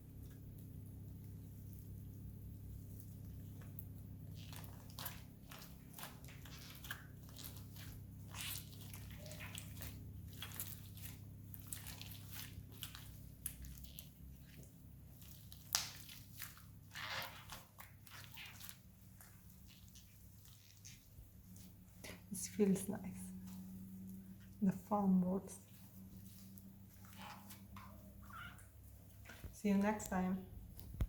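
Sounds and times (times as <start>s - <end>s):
slime squished by hand: 2.8s - 22.2s.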